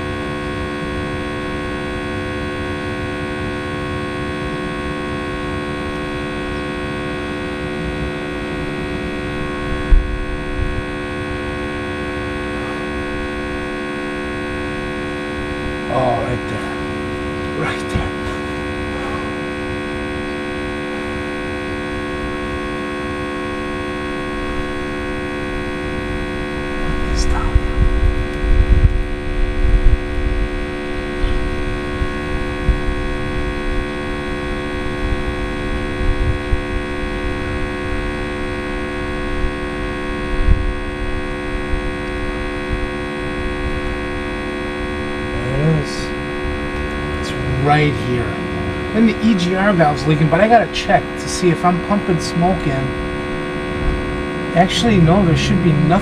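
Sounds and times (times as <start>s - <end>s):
low rumble: 24.4s - 34.1s, 43.7s - 51.2s.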